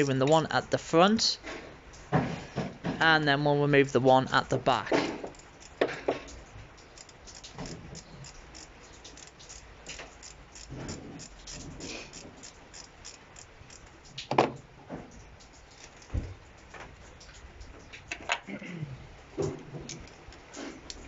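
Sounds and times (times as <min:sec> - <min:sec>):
ratchet wrench clicking: 0:05.2 - 0:14.0.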